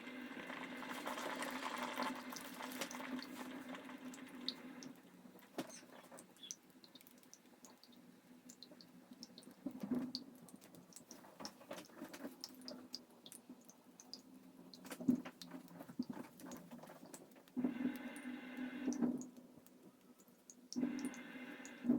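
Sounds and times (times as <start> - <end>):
coffee maker humming: 0.0 - 5.0
water spurts: 0.0 - 7.9
water clicking and popping: 0.1 - 21.9.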